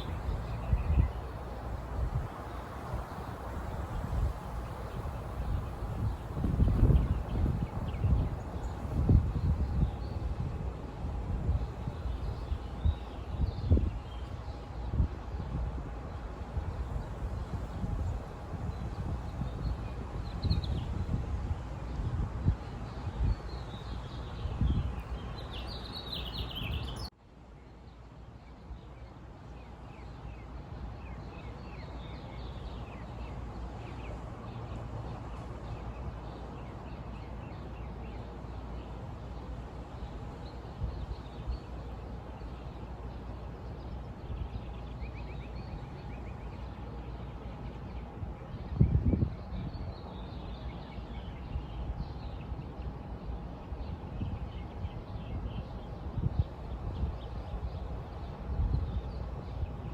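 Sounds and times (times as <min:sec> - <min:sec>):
birds chirping: 0:22.9 - 0:27.1.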